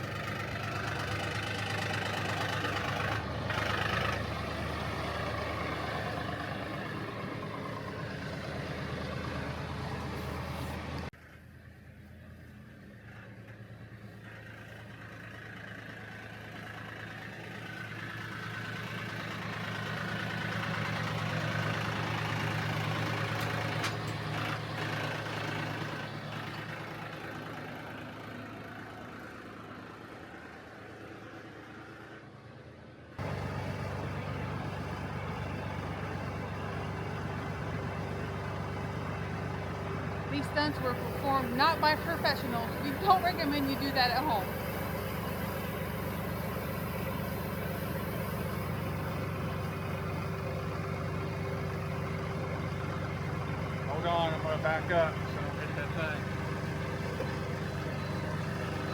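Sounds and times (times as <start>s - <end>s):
tractor engine running: 0.0s - 58.9s.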